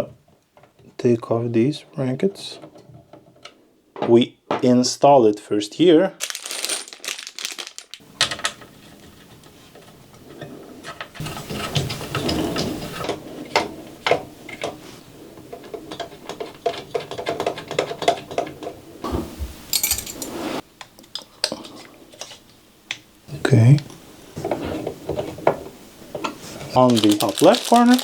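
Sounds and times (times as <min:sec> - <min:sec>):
rustling: 0:06.2 - 0:08.0, 0:26.3 - 0:28.0
small metal parts clinking: 0:06.2 - 0:08.0, 0:19.7 - 0:20.3, 0:26.8 - 0:28.0.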